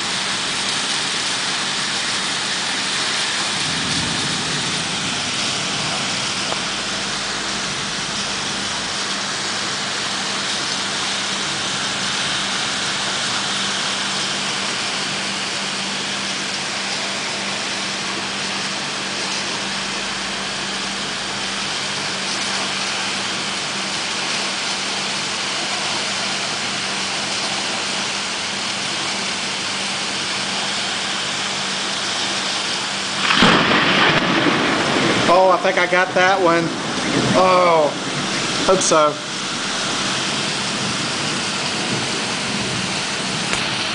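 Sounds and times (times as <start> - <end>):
heavy rain pouring: 0.0 - 43.9
low hum: 3.4 - 10.5, 16.9 - 22.6.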